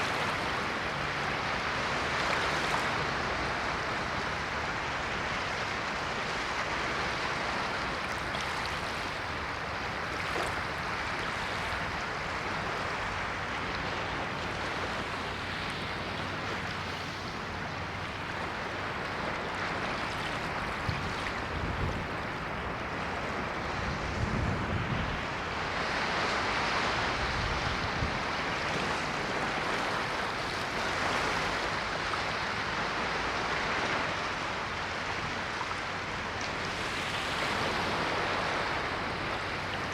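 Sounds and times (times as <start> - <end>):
deep rumble of breaking waves: 0.0 - 39.9
ocean waves washing on shore: 0.0 - 39.9.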